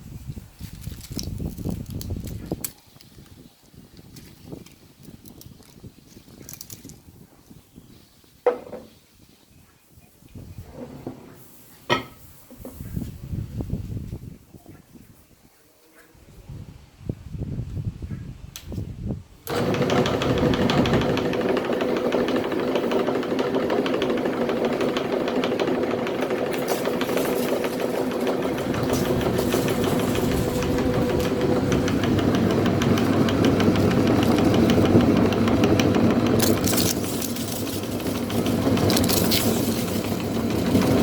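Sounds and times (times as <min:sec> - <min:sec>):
electric meat grinder running: 0:19.5 - 0:41.0.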